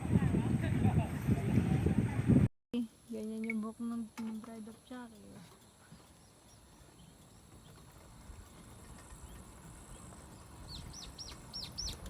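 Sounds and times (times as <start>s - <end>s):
wind rumble on microphone: 0.0s - 2.5s, 7.0s - 12.0s.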